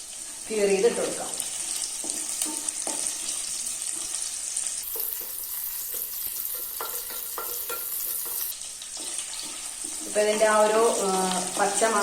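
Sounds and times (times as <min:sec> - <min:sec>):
vegetables sizzling in hot oil: 0:00.0 - 0:12.0
spoon stirring and scraping: 0:04.8 - 0:10.2.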